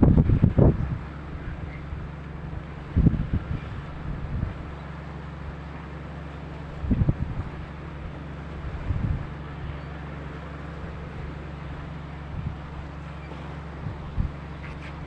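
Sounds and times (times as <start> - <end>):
wind buffeting microphone: 0.0 - 4.8, 6.7 - 9.6, 10.8 - 13.0, 13.7 - 15.0
boat engine droning: 0.0 - 15.0.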